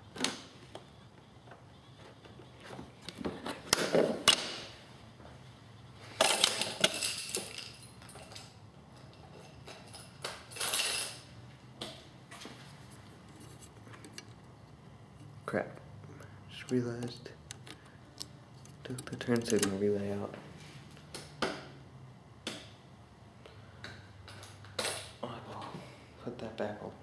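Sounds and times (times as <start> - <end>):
small hard parts clattering: 6.2 - 11.2, 16.5 - 20.0.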